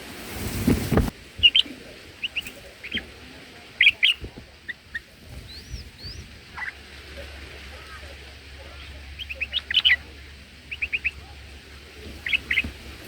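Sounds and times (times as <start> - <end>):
rustling: 0.0 - 3.1, 11.1 - 13.0
bird chirping: 1.4 - 3.1, 3.8 - 6.8, 8.7 - 11.3, 12.2 - 12.7.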